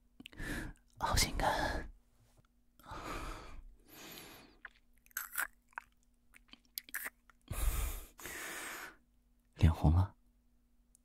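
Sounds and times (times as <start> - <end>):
breaths close to microphone: 7.5 - 9.0.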